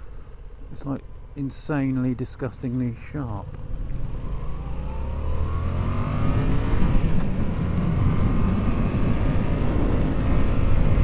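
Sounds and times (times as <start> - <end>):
motorcycle engine accelerating: 3.4 - 11.0.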